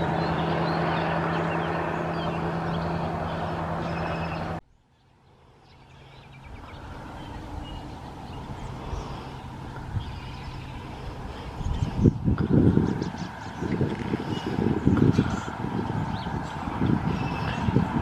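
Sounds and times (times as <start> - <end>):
vehicle engine idling: 0.0 - 4.6
birds chirping: 0.0 - 18.0.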